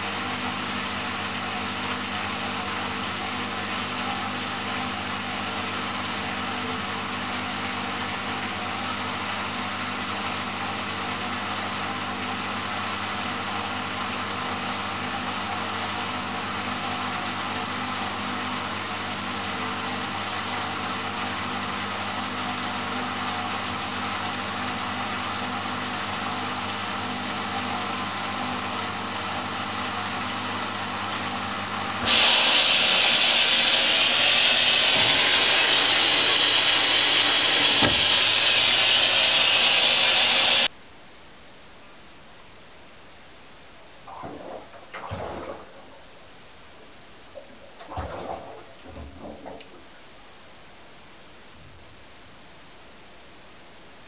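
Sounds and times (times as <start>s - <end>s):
washing machine running: 0.0s - 40.7s, 47.5s - 49.9s.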